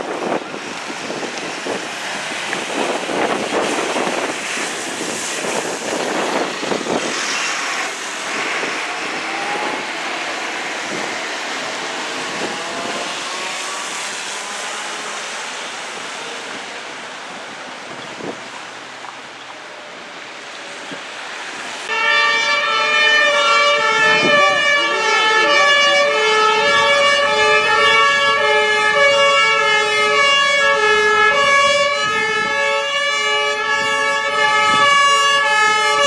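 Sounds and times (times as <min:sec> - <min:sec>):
road traffic driving past: 0:00.0 - 0:36.0
vehicle engine speeding up: 0:00.3 - 0:17.3, 0:22.8 - 0:32.7.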